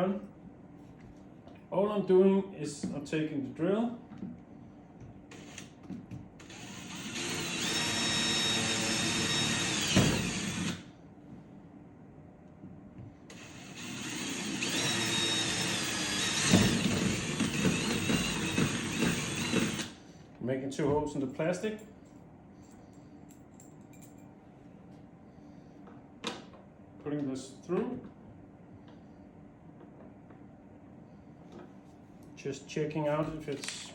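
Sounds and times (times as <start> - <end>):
power drill boring through plastic: 5.3 - 5.7, 6.4 - 10.9, 13.3 - 20.0.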